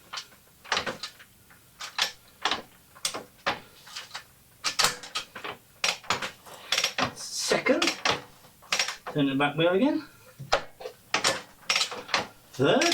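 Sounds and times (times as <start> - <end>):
motorcycle gearbox mechanical clicks: 7.7 - 9.2, 10.5 - 12.9.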